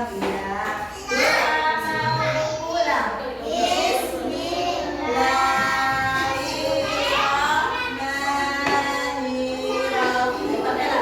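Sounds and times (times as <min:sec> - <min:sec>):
person singing children's song: 0:00.0 - 0:11.0.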